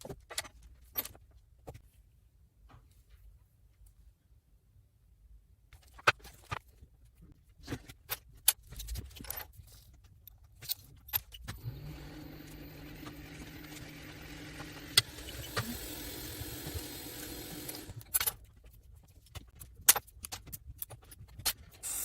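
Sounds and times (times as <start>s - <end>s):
electric hum: 11.5s - 18.0s.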